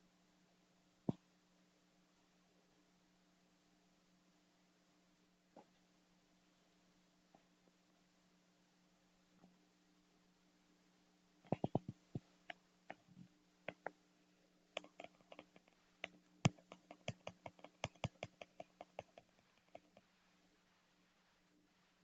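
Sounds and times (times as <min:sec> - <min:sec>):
faint steady hum: 0:00.0 - 0:22.0
keyboard key clicks: 0:11.5 - 0:12.0, 0:16.5 - 0:20.0.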